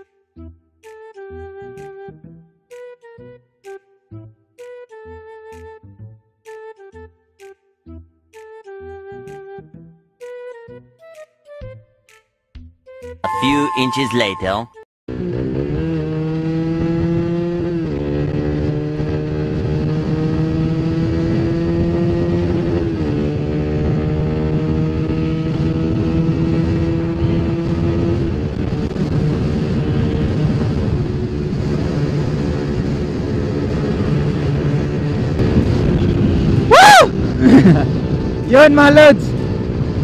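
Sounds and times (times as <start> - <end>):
motorcycle engine accelerating: 15.1 - 40.0.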